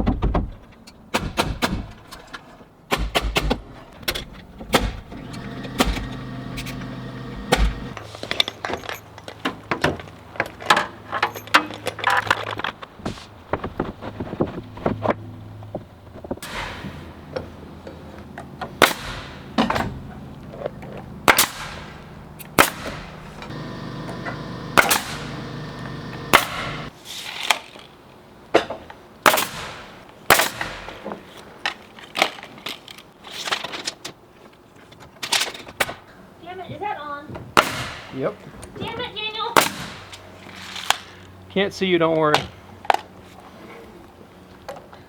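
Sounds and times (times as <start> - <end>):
hammer nailing bangs: 0.0 - 2.1, 4.7 - 8.0, 16.4 - 17.3, 18.8 - 20.0, 21.2 - 26.9.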